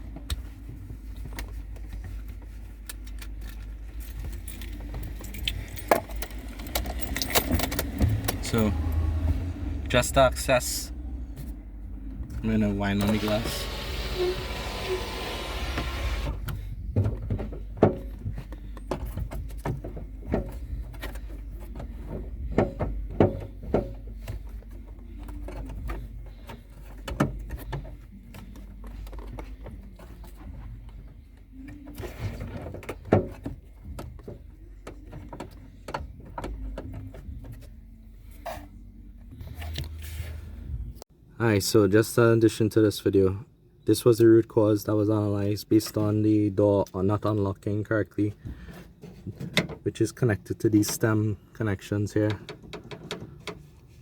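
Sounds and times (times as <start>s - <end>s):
low steady rumble: 0.0s - 41.3s
metal parts clicking and rattling: 2.8s - 8.7s.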